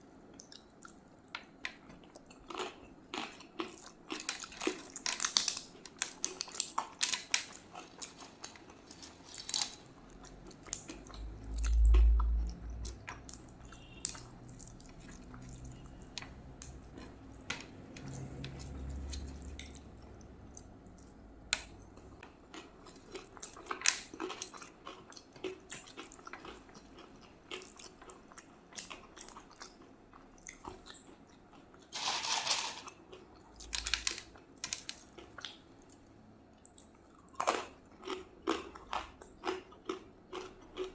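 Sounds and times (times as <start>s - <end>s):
chewing and mouth sounds: 1.8s - 31.9s.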